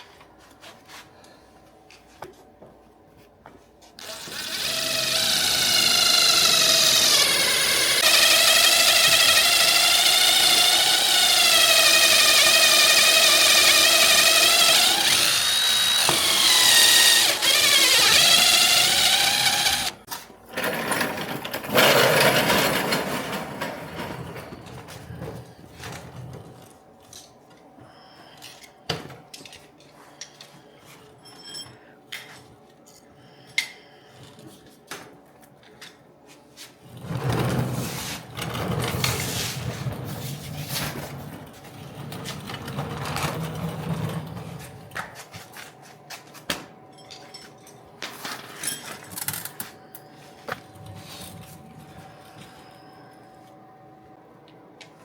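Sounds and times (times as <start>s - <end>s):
electric drill running: 4.0s - 20.0s.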